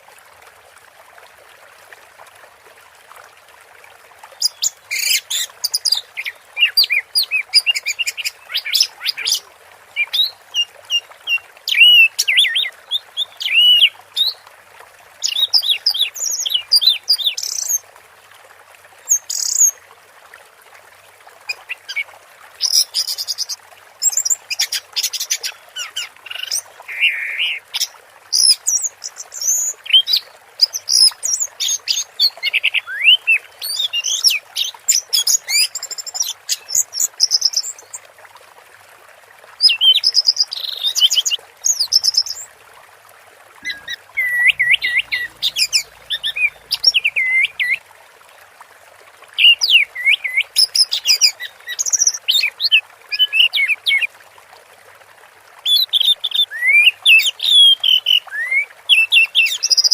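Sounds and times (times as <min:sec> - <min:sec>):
thrush singing: 0:43.6 - 0:47.7.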